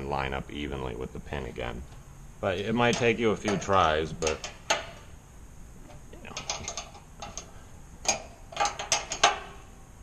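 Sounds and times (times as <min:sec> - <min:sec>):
metal hinge clicking: 0:02.8 - 0:05.1, 0:05.9 - 0:09.6.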